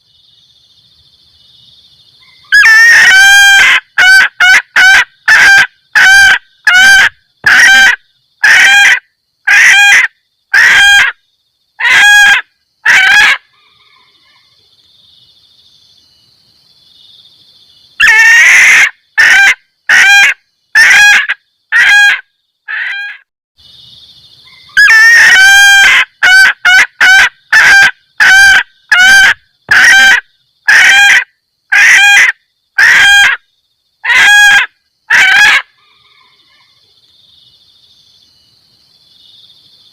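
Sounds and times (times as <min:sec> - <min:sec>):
hen clucking calls: 0:02.2 - 0:11.2, 0:11.8 - 0:14.4, 0:18.0 - 0:23.2, 0:24.5 - 0:33.4, 0:34.0 - 0:36.7.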